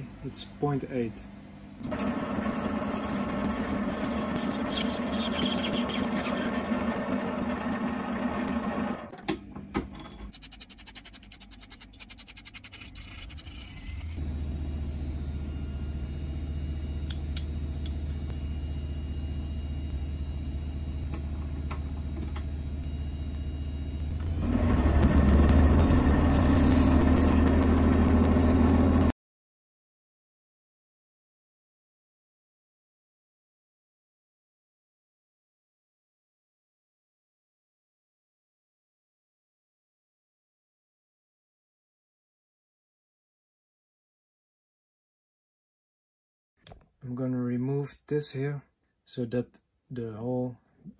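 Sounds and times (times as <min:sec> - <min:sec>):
power tool motor running: 0:01.9 - 0:09.1, 0:15.4 - 0:29.1.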